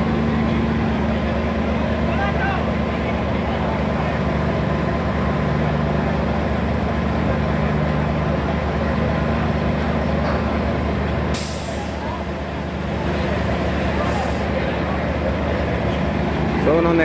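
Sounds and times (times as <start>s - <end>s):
vehicle engine running: 0.0s - 17.0s
short sharp hiss: 11.3s - 11.9s.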